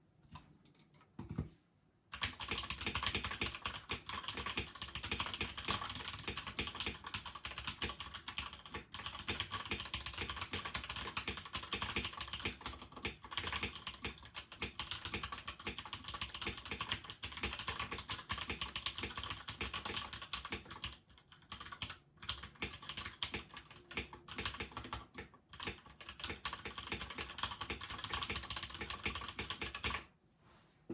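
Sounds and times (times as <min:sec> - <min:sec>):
mechanical keyboard typing: 0:02.1 - 0:30.0.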